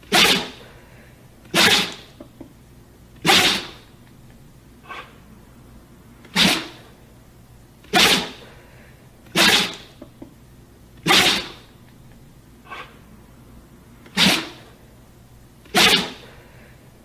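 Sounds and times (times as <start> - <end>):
dog sneezing: 0.0 - 2.2, 3.2 - 3.9, 4.8 - 5.2, 6.2 - 7.0, 7.8 - 8.6, 9.2 - 10.0, 11.0 - 11.7, 12.7 - 13.0, 14.0 - 14.8, 15.6 - 16.4.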